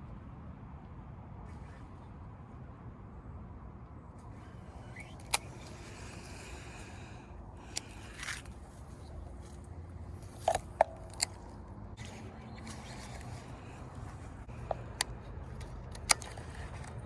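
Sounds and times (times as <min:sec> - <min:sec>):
fishing tackle clicks: 0:04.9 - 0:08.6, 0:10.2 - 0:13.8, 0:14.5 - 0:17.0.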